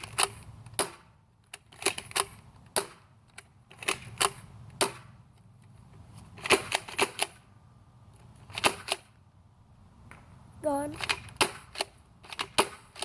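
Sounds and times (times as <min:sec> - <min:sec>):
toy blaster plastic clacks: 0:00.0 - 0:05.1, 0:06.4 - 0:07.4, 0:08.4 - 0:09.1, 0:10.9 - 0:13.0.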